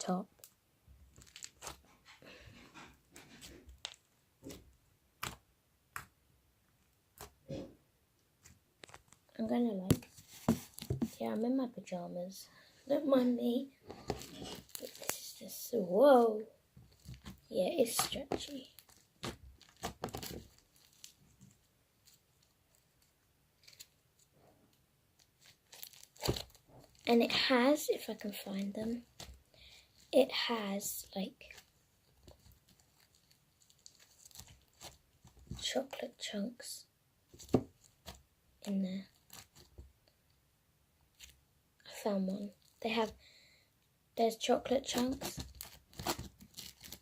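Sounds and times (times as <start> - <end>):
slime squelching and crackling: 13.9 - 16.3, 16.9 - 21.2, 25.2 - 35.9.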